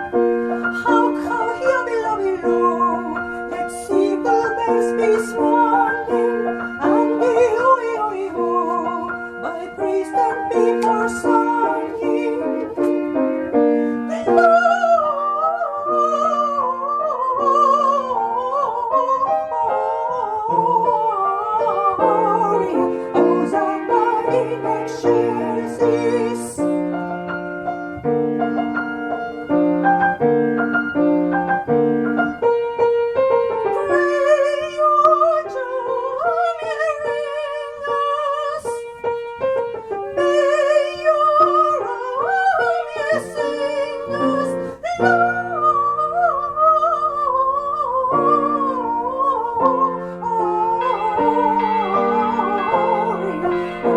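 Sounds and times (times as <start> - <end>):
high singing voice with vibrato: 14.1 - 26.5, 50.8 - 53.9
piano chords: 50.8 - 53.9.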